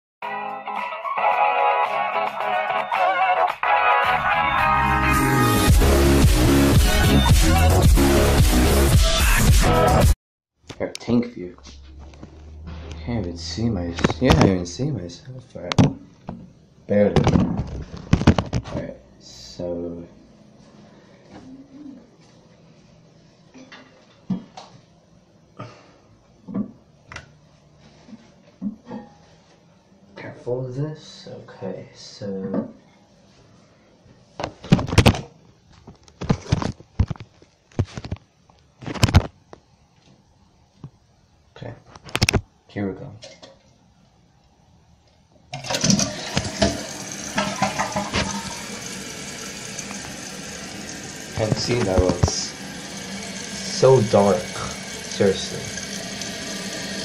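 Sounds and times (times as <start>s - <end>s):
toilet flushing: 45.5s - 57.0s.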